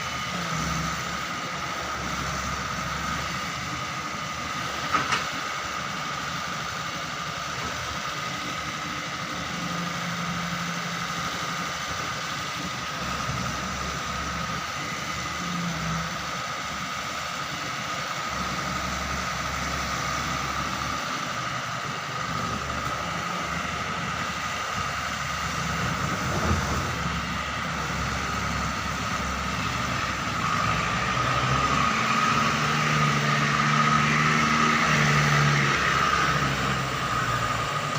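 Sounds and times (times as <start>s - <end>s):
diesel engine running: 0.0s - 37.9s
high whine: 14.0s - 37.9s.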